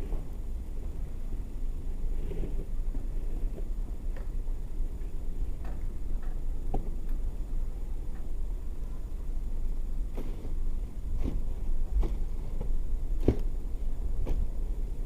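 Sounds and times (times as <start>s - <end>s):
faint clicks and knocks: 2.9s - 4.4s, 5.0s - 7.3s.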